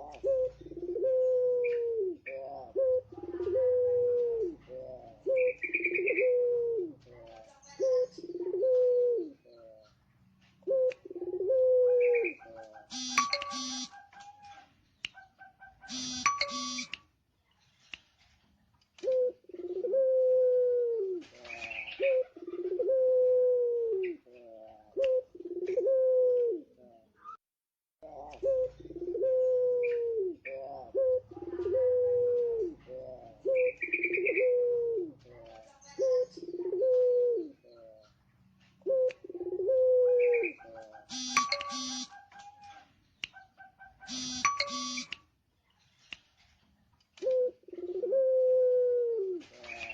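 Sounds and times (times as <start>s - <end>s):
dove cooing: 0.0s - 16.9s, 19.0s - 27.3s, 28.0s - 45.1s, 47.2s - 49.9s
rapidly pulsed chirps: 15.9s - 16.9s, 44.1s - 45.1s.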